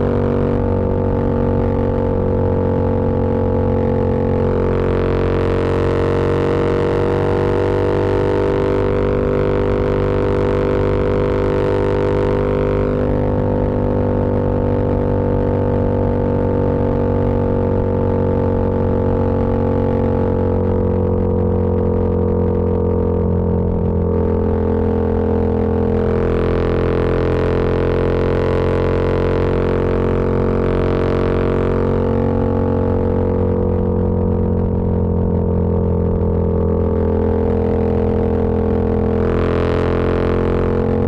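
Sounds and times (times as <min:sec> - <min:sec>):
motorcycle engine droning: 0:00.0 - 0:41.0.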